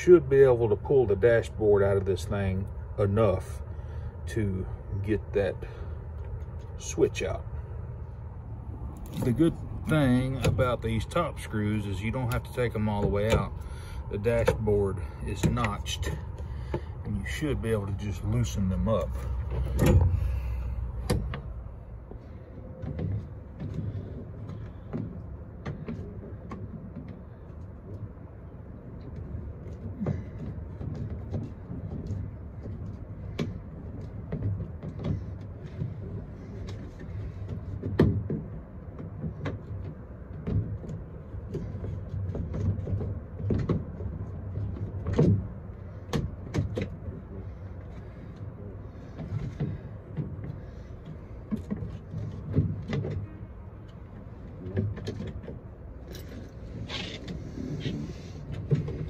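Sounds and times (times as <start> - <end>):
steady low hum: 0.0 - 59.0
clicks and rattles of plastic dashboard: 8.9 - 59.0.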